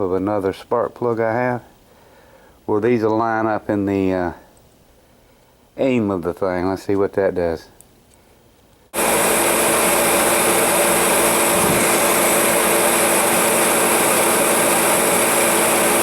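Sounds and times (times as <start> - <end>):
heater blower fan whirring: 9.0 - 16.0
airy hiss: 10.8 - 13.2.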